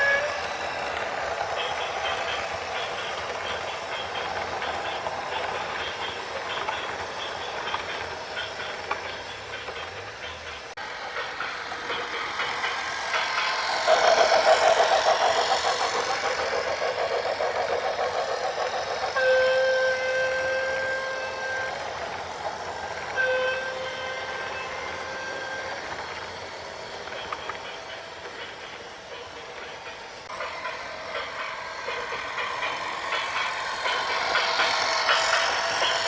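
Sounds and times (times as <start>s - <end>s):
train clattering past: 0.0s - 36.0s
train horn blast: 19.2s - 22.0s, 23.1s - 25.7s.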